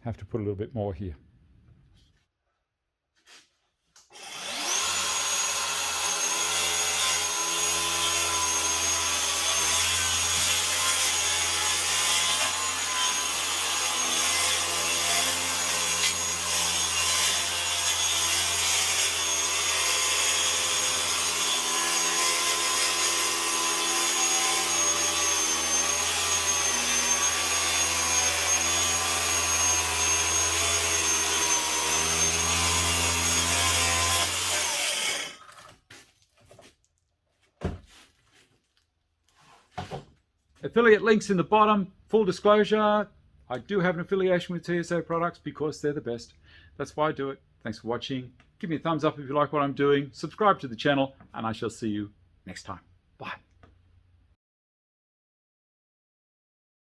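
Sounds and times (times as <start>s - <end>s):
track saw cutting wood: 4.1s - 35.6s.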